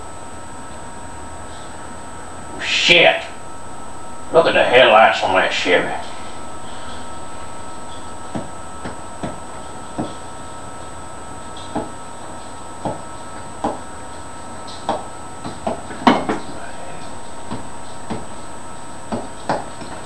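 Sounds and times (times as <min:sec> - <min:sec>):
steady background hum: 0:00.0 - 0:20.0.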